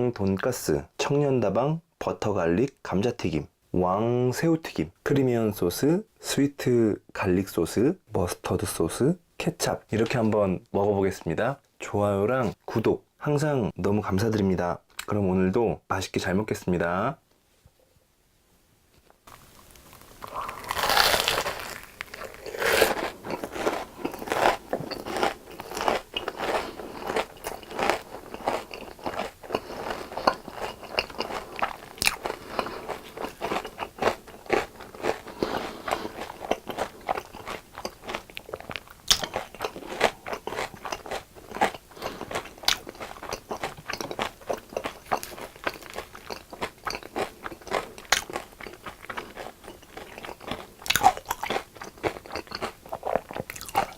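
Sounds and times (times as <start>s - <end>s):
crunchy chewing of fried food: 19.2s - 53.9s.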